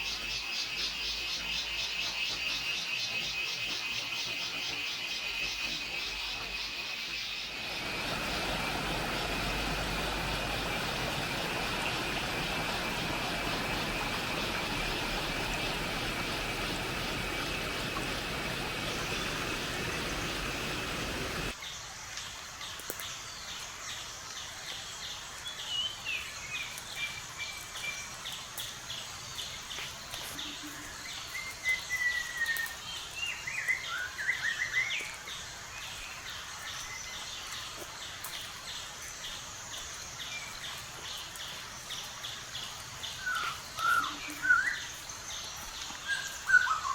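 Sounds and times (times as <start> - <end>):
insects trilling: 0.0 - 21.6
dense steady hiss: 0.0 - 31.9
birds whistling and calling: 43.2 - 45.0, 46.0 - 46.9.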